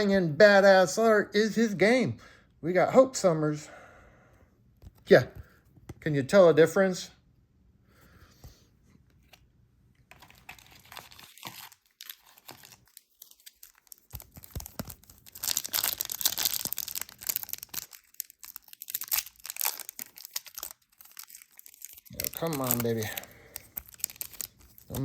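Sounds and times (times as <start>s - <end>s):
foil wrapper crinkling and tearing: 10.1s - 25.0s.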